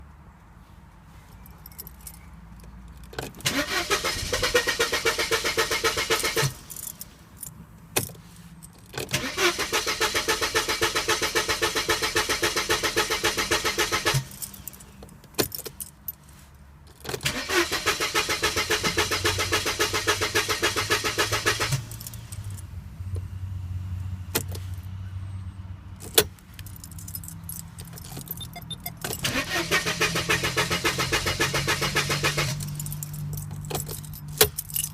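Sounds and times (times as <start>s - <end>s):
car starter motor cranking: 3.1s - 7.0s, 8.8s - 15.6s, 17.0s - 22.6s, 26.9s - 34.9s.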